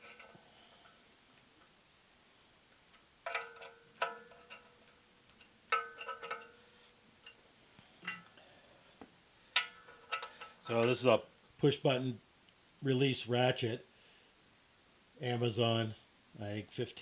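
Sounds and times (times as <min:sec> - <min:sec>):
ratchet clinking on metal: 0:03.2 - 0:07.4, 0:09.6 - 0:10.8.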